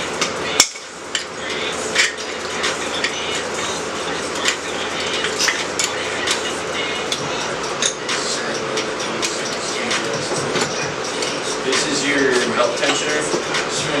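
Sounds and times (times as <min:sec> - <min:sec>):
hand tools clicking on metal: 0:05.2 - 0:06.0, 0:07.1 - 0:08.2.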